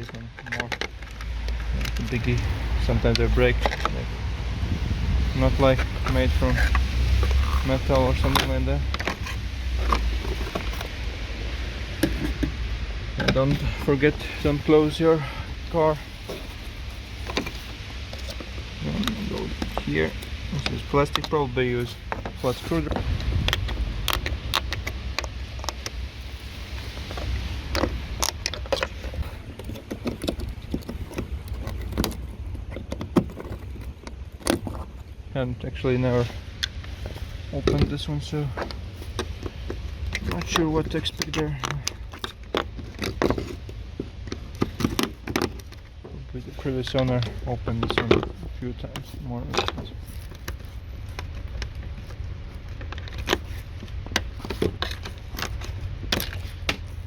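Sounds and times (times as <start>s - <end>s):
steady low rumble: 0.0s - 57.0s
plastic clicks and scrapes: 26.8s - 35.0s, 38.6s - 45.9s, 47.0s - 57.0s.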